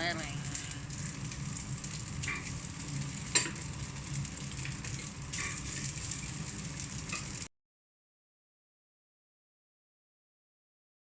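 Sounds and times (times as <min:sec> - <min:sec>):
pot simmering with sizzle: 0:00.0 - 0:07.5.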